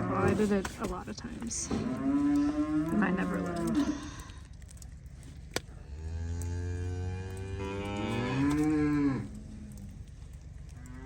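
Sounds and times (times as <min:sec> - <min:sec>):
cow mooing: 0:01.6 - 0:04.4, 0:05.8 - 0:09.9.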